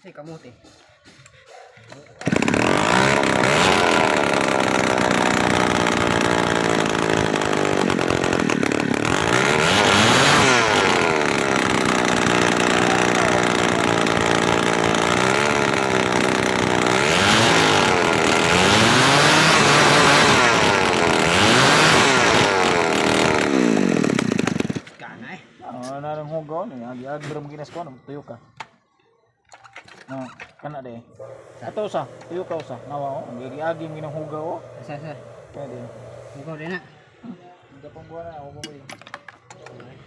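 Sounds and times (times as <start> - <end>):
brush cutter engine revving: 2.2 - 25.1, 31.2 - 36.9.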